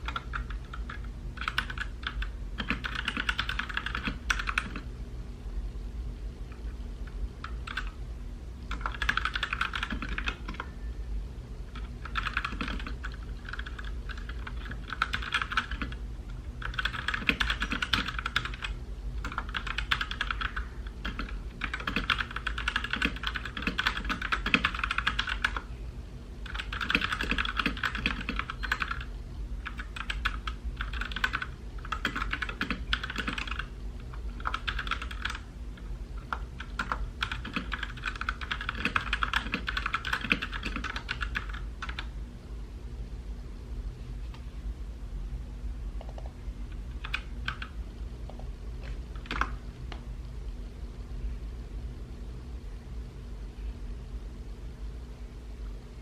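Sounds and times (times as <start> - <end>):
typing on mechanical keyboard: 0.0 - 4.9, 7.4 - 8.0, 8.7 - 10.7, 11.7 - 16.0, 16.6 - 25.7, 26.4 - 42.1, 47.0 - 47.8, 49.2 - 49.6.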